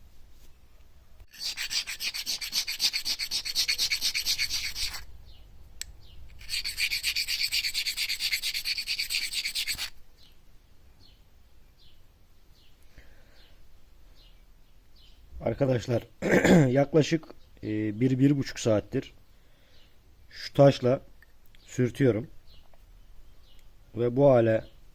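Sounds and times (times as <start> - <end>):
stone scraping on whetstone: 1.3 - 5.1, 6.4 - 10.0.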